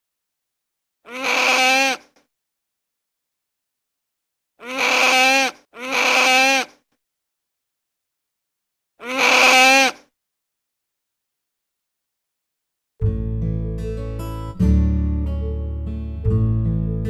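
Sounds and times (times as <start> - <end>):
sea otter whining cries: 1.1 - 2.0, 4.6 - 6.7, 9.0 - 10.0.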